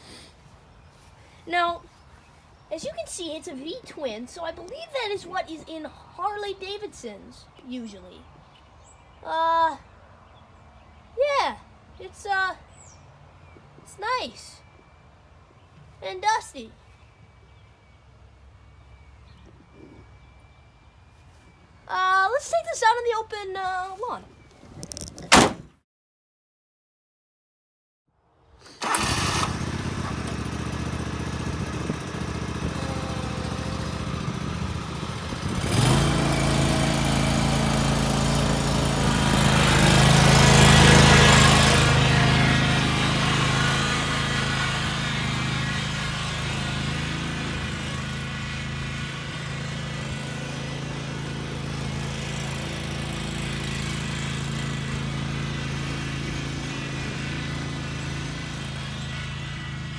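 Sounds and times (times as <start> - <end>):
riding lawn mower engine: 23.9 - 25.7, 28.6 - 59.9.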